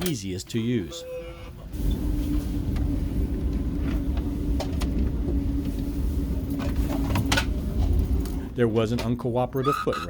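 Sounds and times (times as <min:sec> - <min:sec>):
train cabin rumble: 0:00.0 - 0:10.0.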